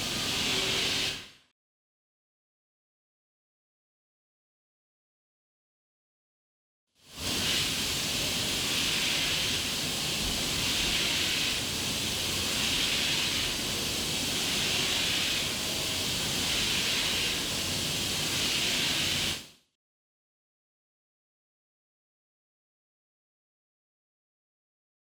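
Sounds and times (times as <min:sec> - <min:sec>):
cnc milling cutting hiss: 0:00.0 - 0:01.3, 0:07.1 - 0:19.5.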